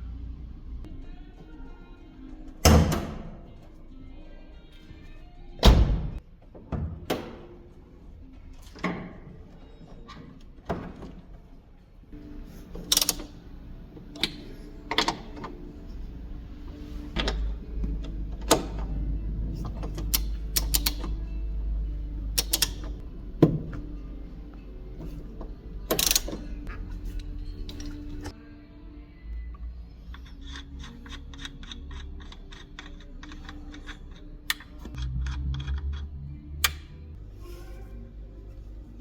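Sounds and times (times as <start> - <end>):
background music: 0.0 - 39.0
tools clicking and knocking: 12.7 - 13.4, 19.6 - 21.2, 22.4 - 23.8, 25.8 - 28.3, 30.1 - 36.8.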